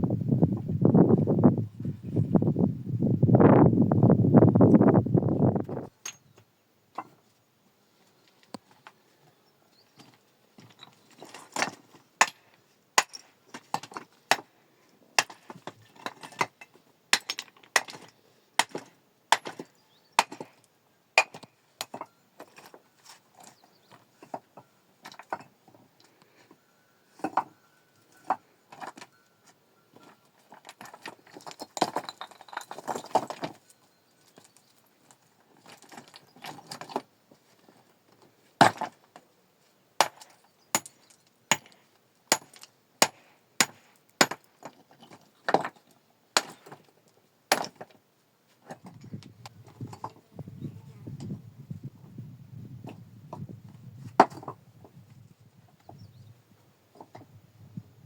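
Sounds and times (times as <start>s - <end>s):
rocks clacking together: 9.9s - 14.5s, 15.2s - 26.1s, 27.2s - 27.6s, 28.2s - 29.1s, 30.0s - 39.2s, 40.0s - 48.0s, 54.1s - 55.0s.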